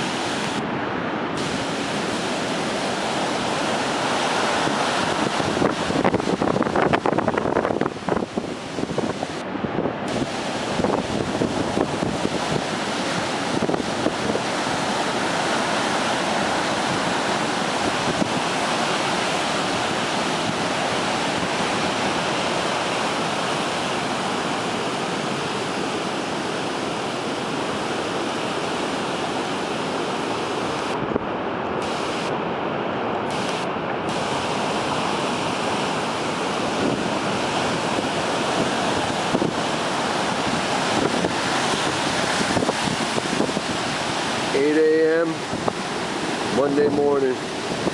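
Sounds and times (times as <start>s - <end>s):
wind buffeting microphone: 0.0s - 32.6s, 33.3s - 47.9s
storm surf crashing: 0.0s - 47.9s.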